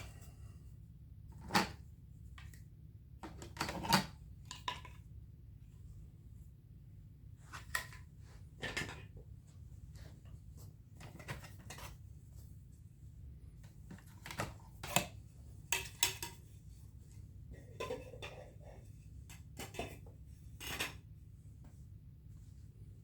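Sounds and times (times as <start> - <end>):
plastic tools clicking and knocking: 3.2 - 5.0.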